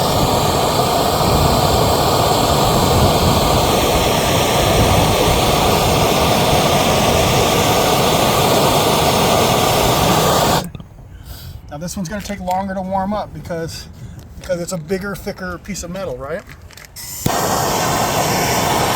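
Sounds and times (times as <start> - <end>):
gas torch burning: 0.0 - 10.7, 16.9 - 18.9.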